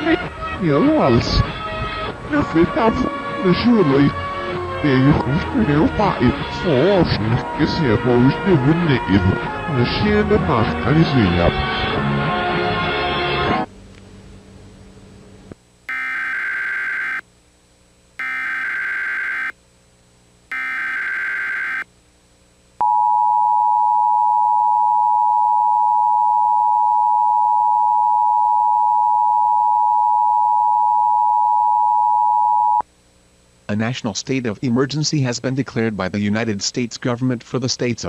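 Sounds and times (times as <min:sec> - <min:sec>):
digital data bursts: 0:15.9 - 0:17.2, 0:18.2 - 0:19.5, 0:20.5 - 0:21.8.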